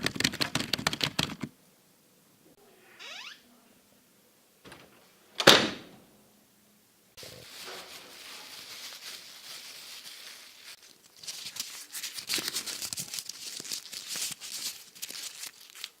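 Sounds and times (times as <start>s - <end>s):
crinkling rustle: 7.2s - 16.0s.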